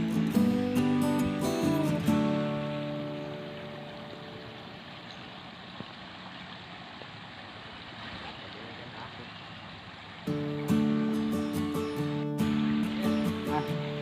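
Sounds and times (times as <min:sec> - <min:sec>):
guitar music: 0:00.0 - 0:05.0, 0:10.2 - 0:14.0
river water rushing: 0:00.0 - 0:14.0.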